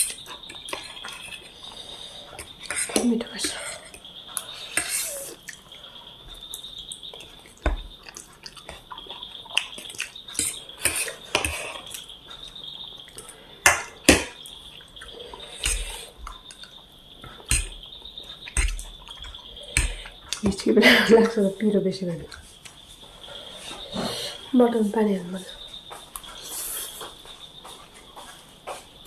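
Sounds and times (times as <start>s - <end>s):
wet eating sounds: 0.0s - 13.4s.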